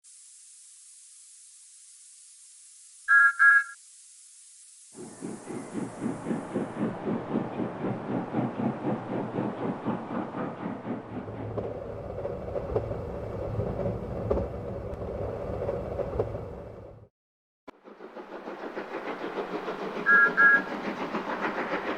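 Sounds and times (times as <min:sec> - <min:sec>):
locomotive running rumble: 0:05.0 - 0:17.1, 0:17.8 - 0:21.9
steam locomotive chuffing: 0:05.0 - 0:17.1, 0:17.7 - 0:21.9.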